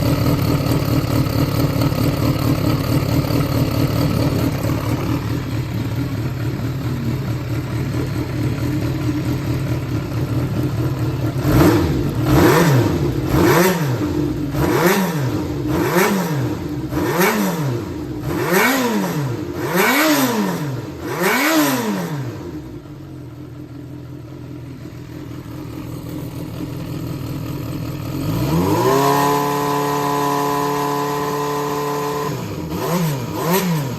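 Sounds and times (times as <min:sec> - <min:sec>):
motorcycle engine idling and revving: 0:00.0 - 0:33.9.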